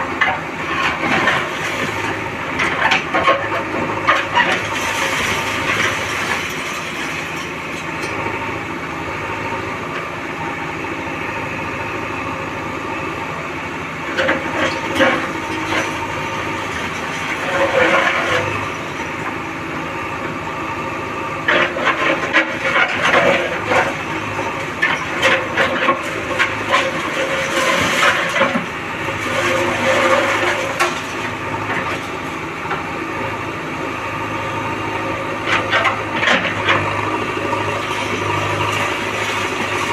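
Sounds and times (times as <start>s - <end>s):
diesel engine running: 0.0s - 39.9s
clanking and crunching debris: 0.2s - 8.2s, 14.1s - 19.4s, 21.4s - 32.8s, 35.4s - 39.9s.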